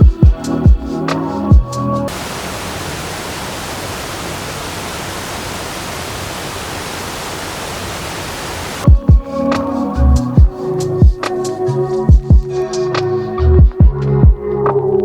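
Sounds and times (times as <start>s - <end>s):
waterfall roaring: 2.1s - 8.9s.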